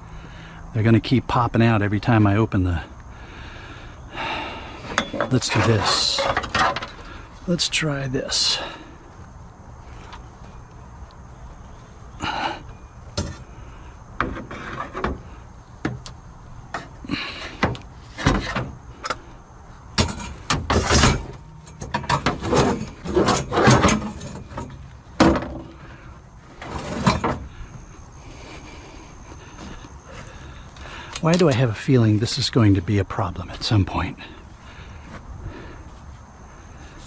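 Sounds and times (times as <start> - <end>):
metal frame pieces clanking: 4.8 - 7.1, 20.0 - 25.8.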